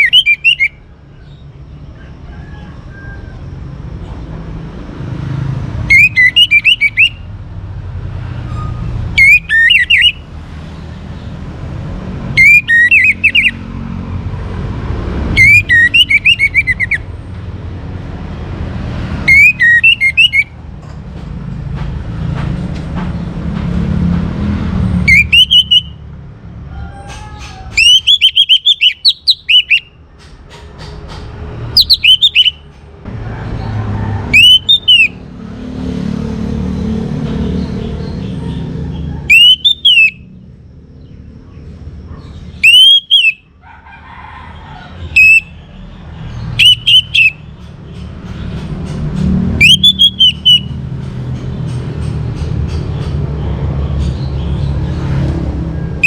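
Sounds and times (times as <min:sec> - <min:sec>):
thrush singing: 0:05.8 - 0:07.3, 0:09.1 - 0:10.3, 0:12.2 - 0:13.7, 0:15.1 - 0:17.2, 0:19.2 - 0:20.6, 0:25.0 - 0:26.0, 0:27.7 - 0:30.0, 0:31.6 - 0:32.7, 0:33.6 - 0:35.3, 0:37.8 - 0:40.3, 0:42.5 - 0:43.5, 0:45.0 - 0:51.0.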